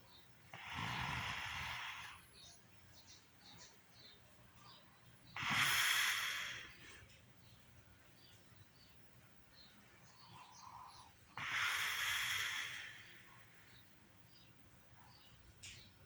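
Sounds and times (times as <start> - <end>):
faint breathing: 0.0 - 7.6, 9.6 - 14.5
woman snoring: 0.6 - 2.2, 11.4 - 13.1.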